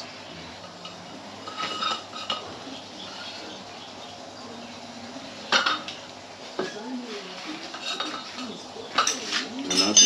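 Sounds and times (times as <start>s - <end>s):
faint steady hum: 0.0s - 10.0s
light metal clinks of tools: 8.9s - 10.0s.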